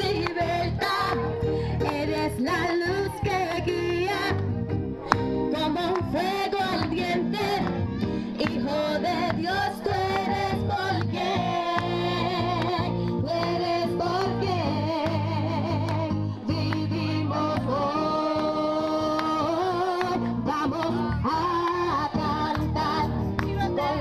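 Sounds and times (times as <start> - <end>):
voices singing: 5.6 - 24.0.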